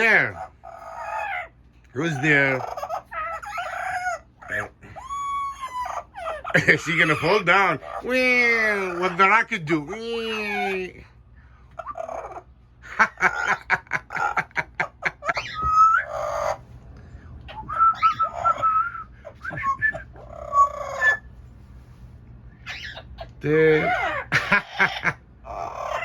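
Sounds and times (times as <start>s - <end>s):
parrot squawking: 0.0s - 11.0s, 11.7s - 16.6s, 17.5s - 21.3s, 22.6s - 26.0s
parrot whistling: 17.5s - 21.3s.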